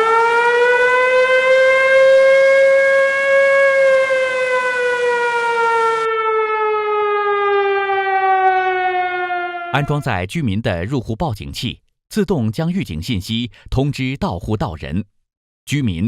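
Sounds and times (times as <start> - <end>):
flood warning siren wailing: 0.0 - 10.1.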